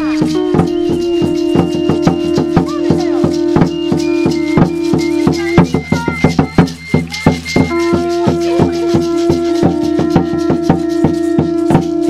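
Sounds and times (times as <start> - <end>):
held low note: 0.0 - 12.0
higher melody notes: 0.0 - 12.0
shaker rattle beat: 0.0 - 12.0.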